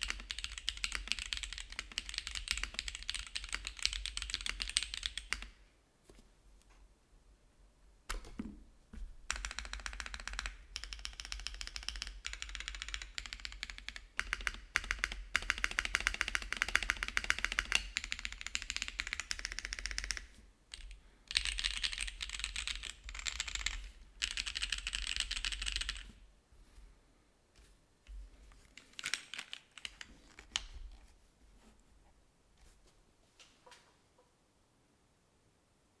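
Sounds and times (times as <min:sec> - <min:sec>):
mechanical keyboard typing: 0:00.0 - 0:05.5, 0:09.3 - 0:26.1, 0:28.8 - 0:30.7.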